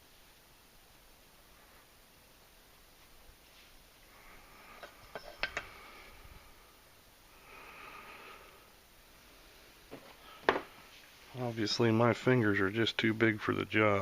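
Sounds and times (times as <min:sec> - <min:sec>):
soft breath: 0:03.4 - 0:11.3.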